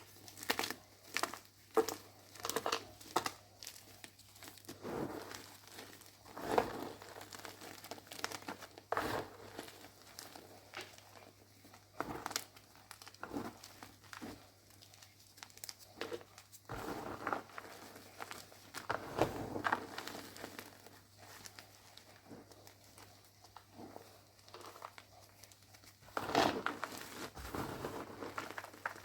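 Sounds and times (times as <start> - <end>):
chalk crunching by hand: 15.4 - 29.0.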